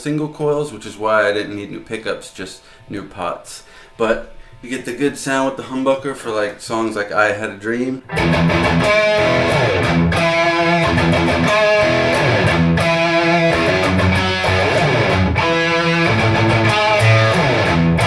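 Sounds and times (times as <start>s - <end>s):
electric guitar chords: 8.1s - 18.0s.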